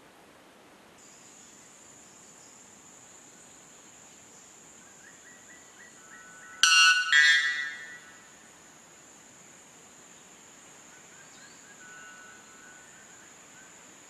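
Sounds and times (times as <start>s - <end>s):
bird ringing call: 6.5s - 8.3s
high-pitched hum: 6.6s - 8.3s.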